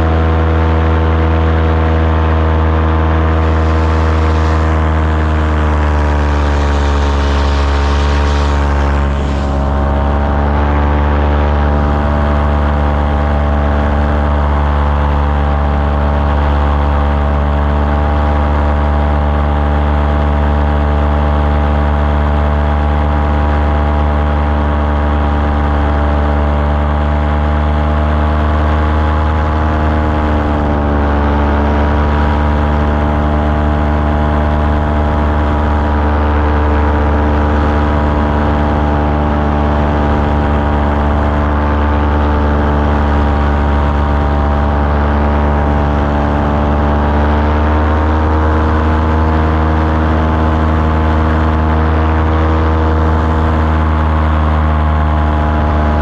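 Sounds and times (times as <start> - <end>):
small aircraft engine running: 0.0 - 56.0
rushing noise: 2.2 - 13.9.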